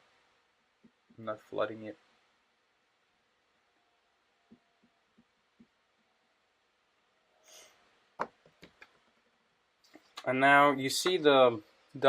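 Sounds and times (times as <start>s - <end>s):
short breathy hiss: 7.4s - 7.9s.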